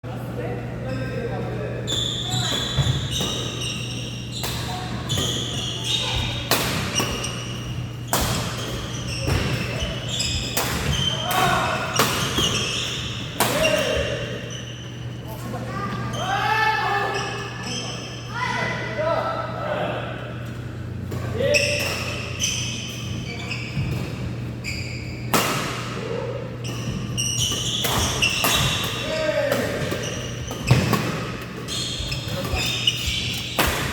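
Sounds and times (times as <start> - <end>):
shoe squeaks on court floor: 1.8 - 11.6, 12.2 - 15.1, 21.4 - 25.3, 26.6 - 33.9.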